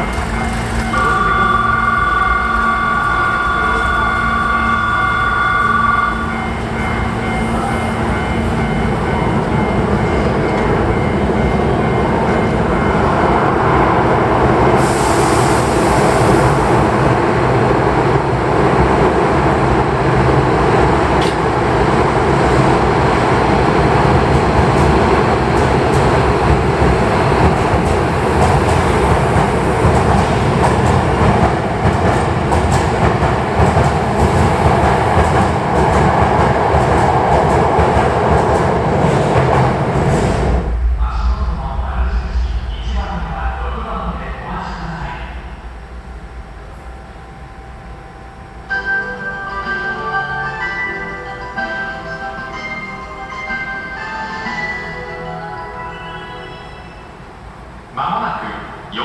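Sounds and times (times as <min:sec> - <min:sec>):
electric train pulling away: 0:00.0 - 0:57.9
burst of hiss: 0:14.8 - 0:16.4.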